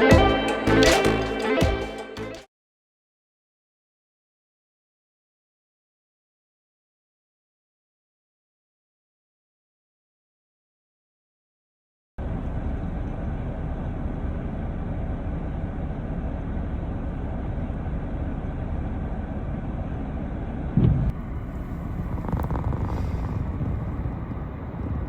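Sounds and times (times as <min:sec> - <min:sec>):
pickup truck engine idling: 0:12.2 - 0:25.0
brief thump: 0:20.8 - 0:21.1.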